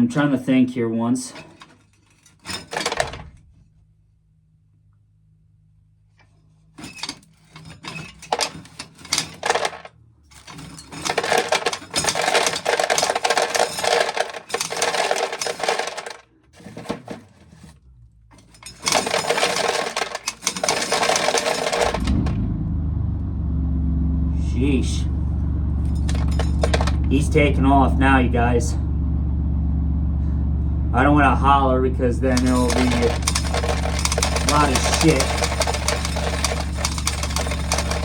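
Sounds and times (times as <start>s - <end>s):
corn sheller with kernels rattling: 1.3s - 3.2s, 6.8s - 22.4s, 25.9s - 27.0s, 32.3s - 38.0s
low engine rumble: 21.9s - 35.4s.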